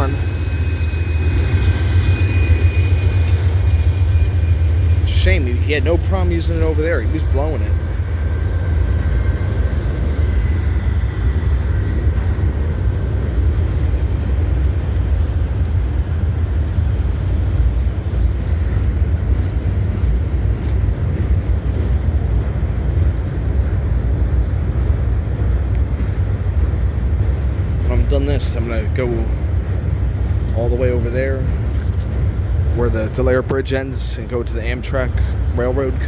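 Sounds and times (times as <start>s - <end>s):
faint high squeal: 0.0s - 12.1s
freight train rolling past: 0.0s - 36.0s.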